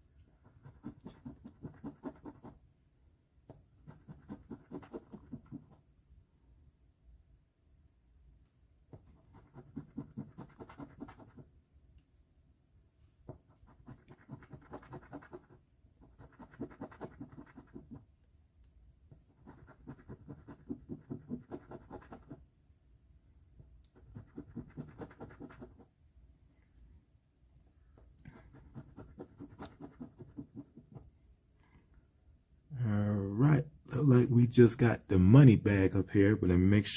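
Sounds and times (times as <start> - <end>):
lottery ticket being scratched: 9.2 - 11.4, 13.7 - 18.0, 19.4 - 22.4, 28.3 - 30.8.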